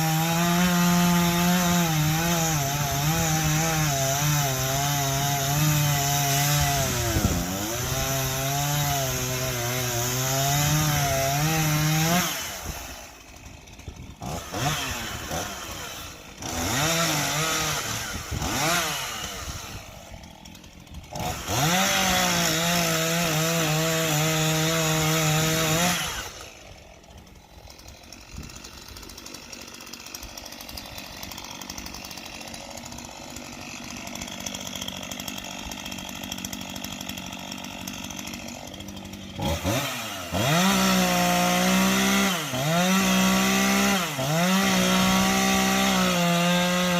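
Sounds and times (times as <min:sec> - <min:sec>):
chainsaw running: 0:00.0 - 0:46.9.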